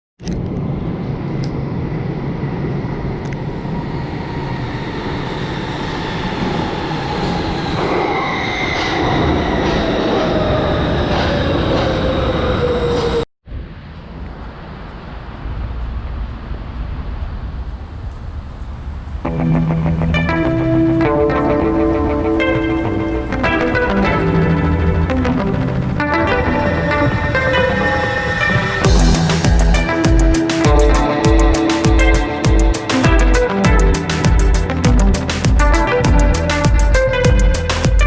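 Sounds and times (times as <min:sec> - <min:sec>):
machine whine falling in pitch: 0:19.2 - 0:38.0
mechanical rumble: 0:22.8 - 0:38.0.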